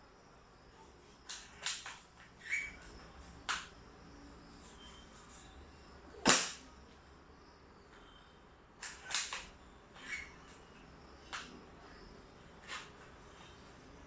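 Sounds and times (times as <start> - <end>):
sharp airsoft rifle shot: 6.2 - 6.7.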